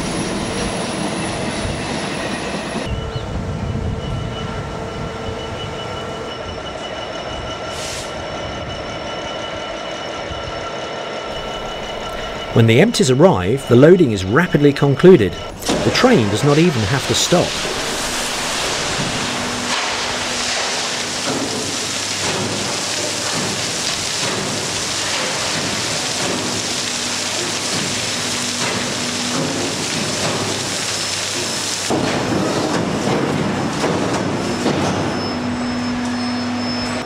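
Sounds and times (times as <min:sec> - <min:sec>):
low machinery hum: 0:02.7 - 0:30.9
coal pouring rushing rattle: 0:15.6 - 0:34.6.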